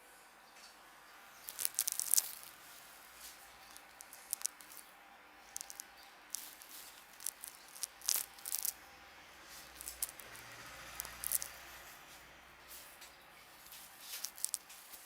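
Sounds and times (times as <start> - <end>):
hands rubbing hair and scalp: 12.7 - 15.0.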